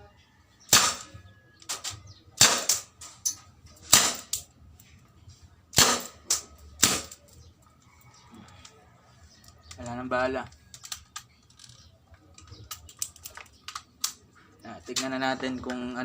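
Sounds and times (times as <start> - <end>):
airsoft revolver shots: 0.7 - 3.0, 3.9 - 4.5, 5.7 - 7.2
gun mechanism clicks: 10.5 - 14.2.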